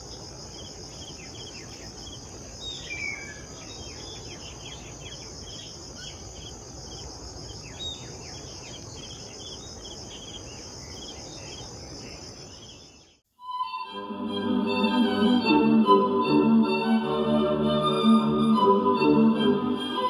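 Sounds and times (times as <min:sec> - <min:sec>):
insects trilling: 0:00.0 - 0:13.2.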